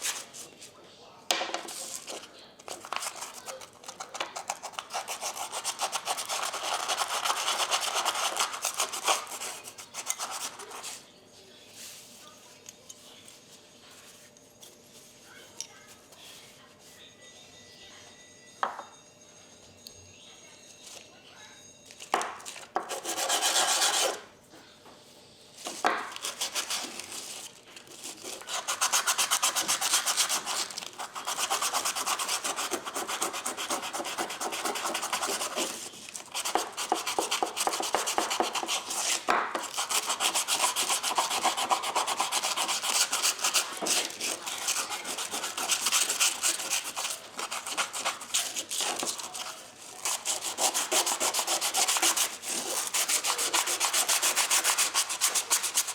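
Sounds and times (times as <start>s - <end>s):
plane rubbed on sandpaper: 22.9s - 24.2s, 28.0s - 55.9s.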